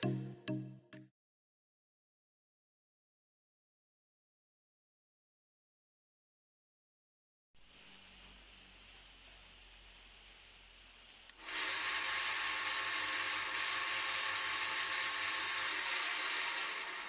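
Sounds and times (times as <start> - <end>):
electric grater whirring: 11.3 - 17.0.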